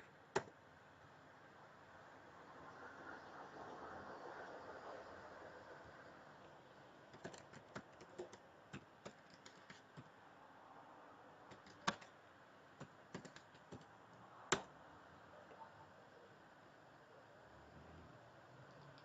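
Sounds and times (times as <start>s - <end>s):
typing on computer keyboard: 7.0s - 10.1s, 11.5s - 12.1s, 12.8s - 13.9s.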